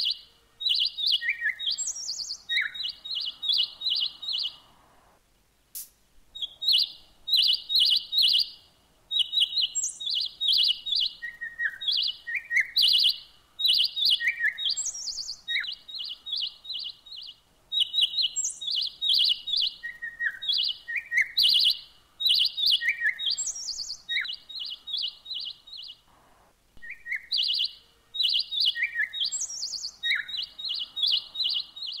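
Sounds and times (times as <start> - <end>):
songbird singing: 0.0 - 5.2, 5.8 - 32.0.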